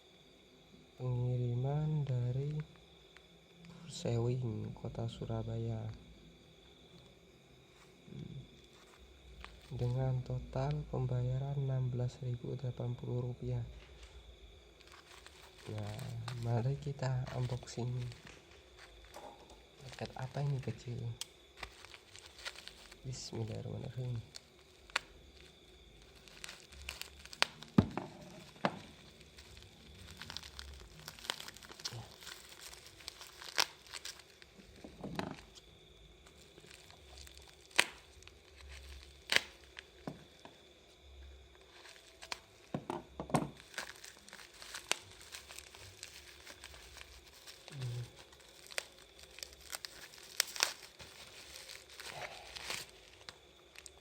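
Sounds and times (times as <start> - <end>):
packaging crinkling and tearing: 8.5 - 10.0, 13.8 - 40.5, 41.5 - 42.7, 43.3 - 54.0.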